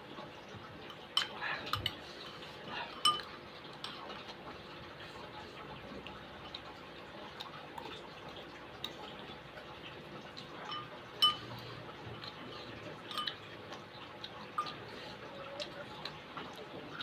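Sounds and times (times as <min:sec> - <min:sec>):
spoon clinking against bowl: 0:00.9 - 0:02.0, 0:02.9 - 0:04.0, 0:10.6 - 0:11.6, 0:13.1 - 0:13.5, 0:14.5 - 0:14.8.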